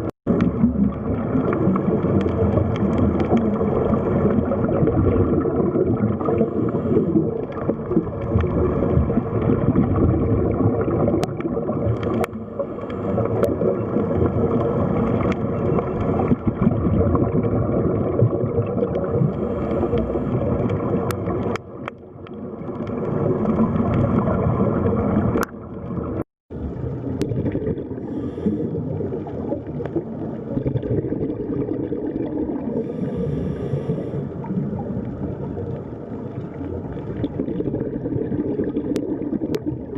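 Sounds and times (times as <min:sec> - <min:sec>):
water wash: 0:00.0 - 0:39.9.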